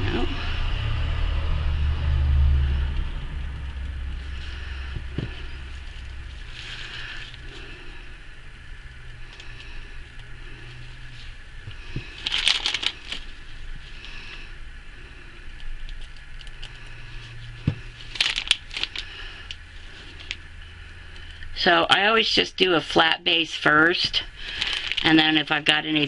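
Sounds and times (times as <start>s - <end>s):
low steady hum: 0.0s - 26.0s
plastic piping bag crinkling: 3.6s - 21.6s, 23.9s - 26.0s.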